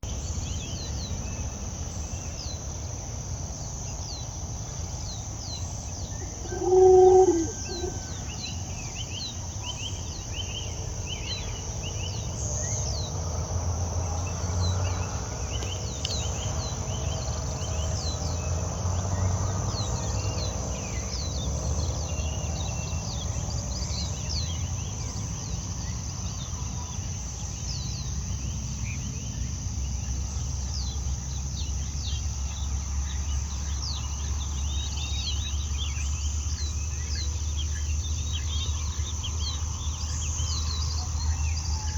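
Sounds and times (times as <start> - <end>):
high insect drone: 0.1 - 41.9
low-pitched animal call: 6.0 - 8.4
falling bird chirps: 6.1 - 8.3.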